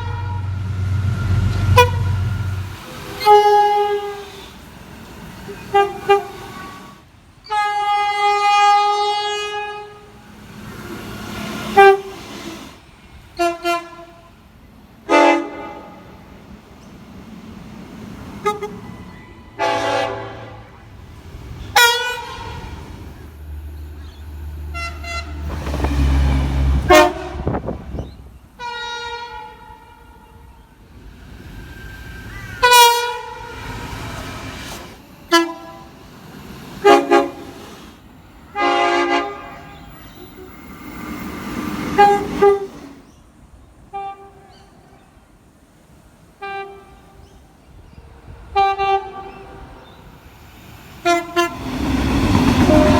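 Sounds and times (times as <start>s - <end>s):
heavy low rumble: 0.0s - 3.5s
train horns sounding: 0.0s - 4.8s, 5.4s - 14.4s, 15.0s - 16.3s, 18.3s - 21.0s, 21.7s - 23.1s, 24.4s - 30.9s, 31.7s - 36.1s, 36.8s - 41.0s, 41.6s - 43.1s, 43.9s - 44.9s, 46.4s - 47.4s, 48.4s - 50.2s, 51.0s - 52.9s.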